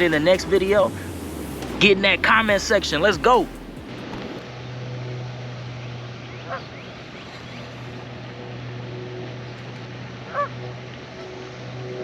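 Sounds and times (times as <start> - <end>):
steady low hum: 0.0 - 4.4
waterfowl honk: 10.3 - 10.5.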